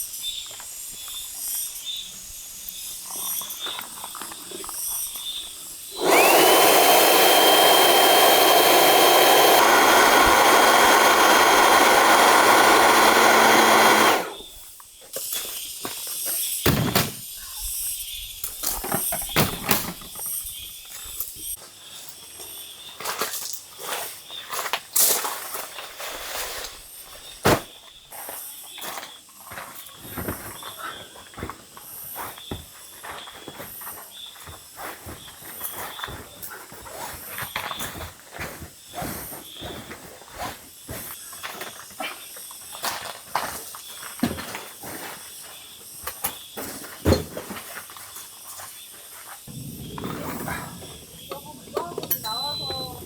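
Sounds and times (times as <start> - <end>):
electric air pump whining: 5.9 - 14.7, 49.5 - 53.0.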